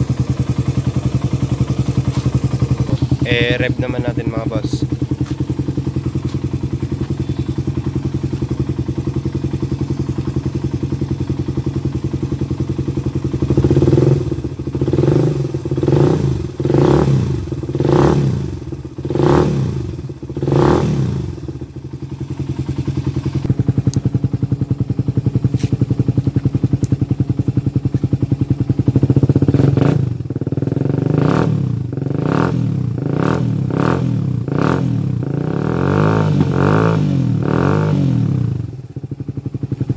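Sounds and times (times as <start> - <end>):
motorcycle engine blips: 0.0 - 14.9, 21.4 - 30.9
motorcycle engine idling: 0.0 - 39.9.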